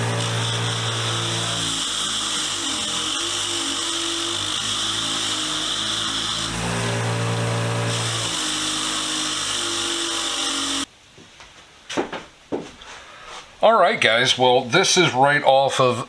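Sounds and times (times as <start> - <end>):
wire wheel scouring metal: 0.0 - 10.9.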